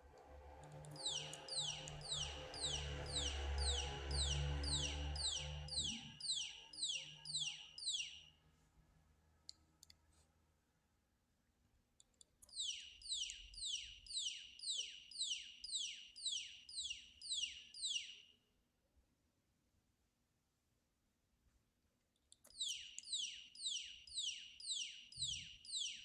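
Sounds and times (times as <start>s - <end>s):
electronic alarm chirps: 0.9s - 8.4s, 12.5s - 18.3s, 22.6s - 26.0s.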